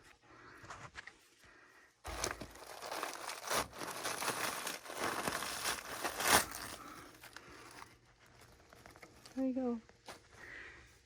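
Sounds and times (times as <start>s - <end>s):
dry paper nest crackling and tearing: 2.1s - 9.6s.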